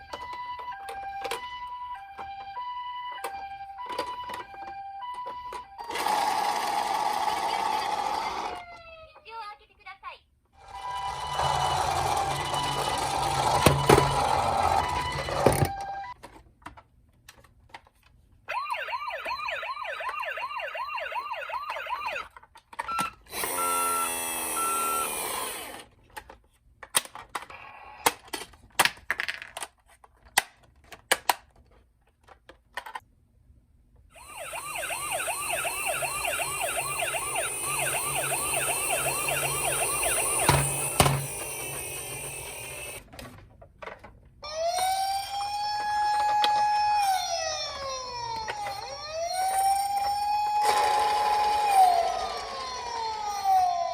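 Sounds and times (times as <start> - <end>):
toy electronic sirens: 0.0 - 9.2, 10.6 - 16.2, 18.5 - 25.8, 34.2 - 43.0, 44.4 - 53.9.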